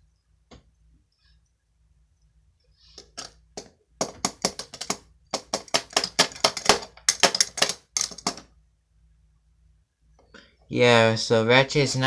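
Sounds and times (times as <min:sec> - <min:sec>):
hard plastic toy clicking: 0:04.1 - 0:08.4.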